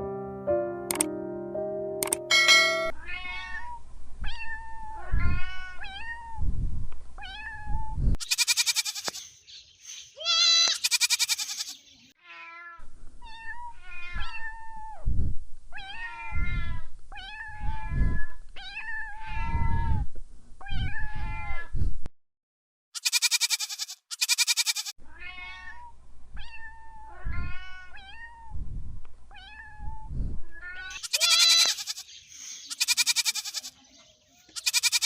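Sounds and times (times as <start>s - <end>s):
cat meowing: 2.9s - 6.4s, 7.2s - 9.2s, 10.2s - 15.0s, 15.7s - 20.0s, 20.6s - 21.7s, 23.0s - 28.6s, 29.3s - 32.0s
cat crying harshly: 3.0s - 6.4s, 10.2s - 14.9s, 15.8s - 19.9s, 20.6s - 21.7s, 23.0s - 28.5s, 30.6s - 32.0s.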